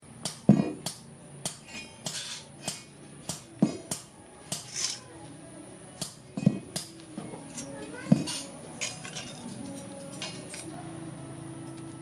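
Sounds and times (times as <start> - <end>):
hammer striking steel on anvil: 0.2 - 5.0, 6.0 - 10.7.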